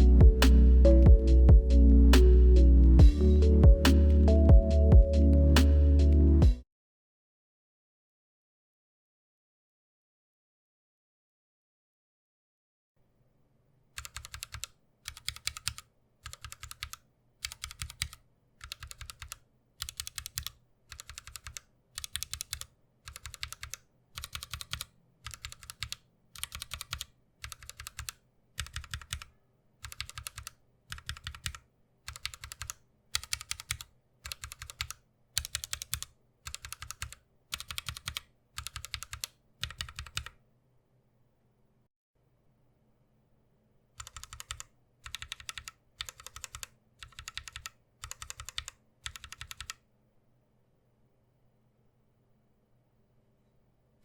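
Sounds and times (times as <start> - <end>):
mechanical keyboard typing: 14.0 - 40.4, 44.0 - 49.8.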